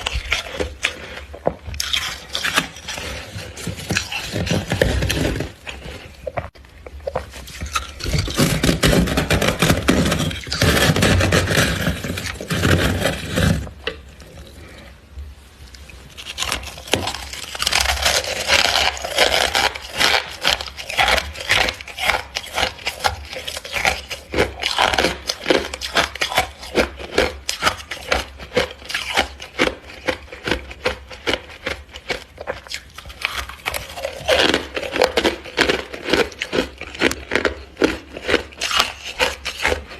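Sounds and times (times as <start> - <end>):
frost being scraped: 0.0 - 14.9, 15.7 - 39.9
crisp frost crunches: 15.8 - 26.9.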